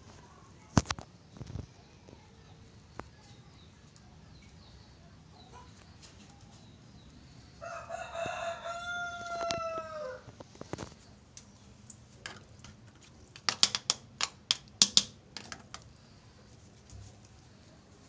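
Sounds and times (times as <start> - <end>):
rooster crowing: 7.6 - 10.3.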